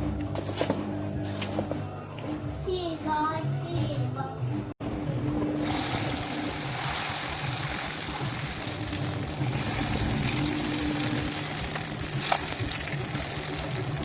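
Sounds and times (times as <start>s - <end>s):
bean cakes sizzling in oil: 5.6s - 14.0s.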